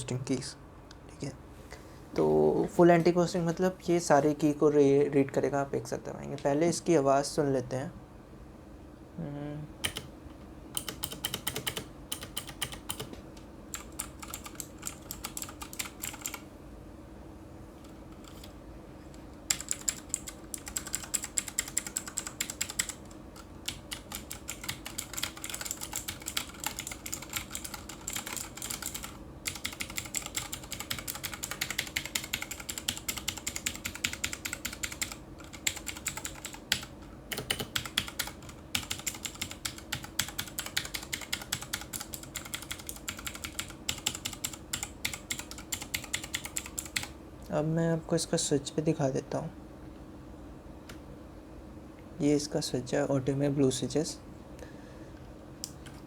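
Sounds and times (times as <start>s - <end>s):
mechanical keyboard typing: 9.8s - 10.1s, 10.8s - 16.4s, 17.9s - 18.5s, 19.5s - 47.1s.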